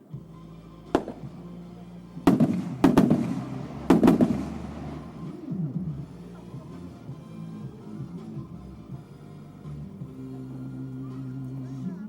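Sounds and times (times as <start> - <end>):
fireworks bursting: 1.0 - 1.6, 2.2 - 5.5
fireworks crackle: 2.3 - 5.2.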